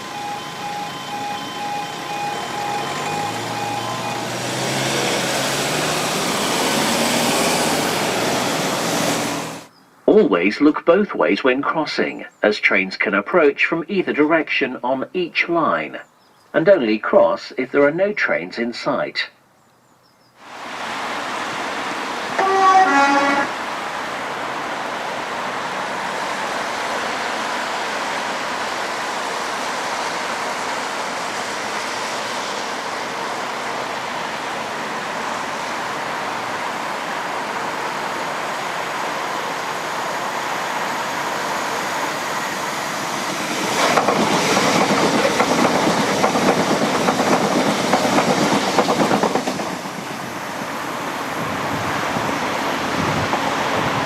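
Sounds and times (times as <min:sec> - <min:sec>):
train passing: 0:00.0 - 0:10.8, 0:20.4 - 0:54.0
two-tone train horn: 0:22.4 - 0:23.7.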